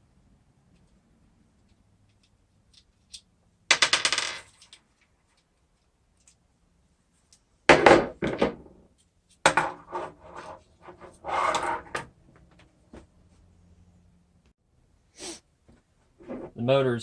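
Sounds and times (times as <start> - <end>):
tools knocking on a workbench: 7.7 - 8.6.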